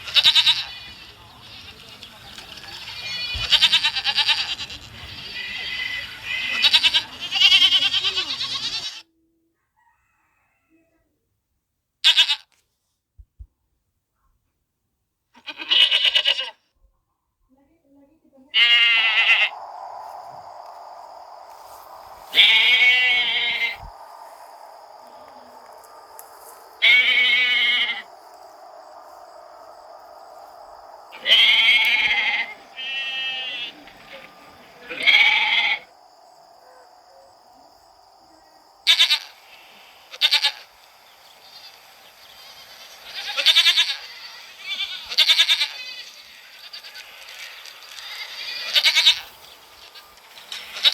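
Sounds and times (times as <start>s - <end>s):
goats bleating: 2.8s - 9.0s, 18.6s - 19.5s, 22.3s - 23.9s, 25.0s - 28.4s, 31.2s - 35.9s, 38.9s - 40.8s, 41.4s - 50.9s.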